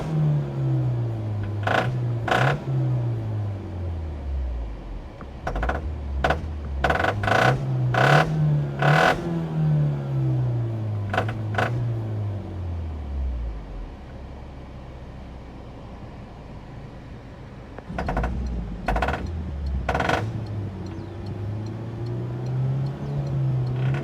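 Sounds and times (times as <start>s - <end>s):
car engine revving: 0.0s - 14.1s, 17.7s - 24.0s
sharp clattering noises: 17.8s - 20.5s.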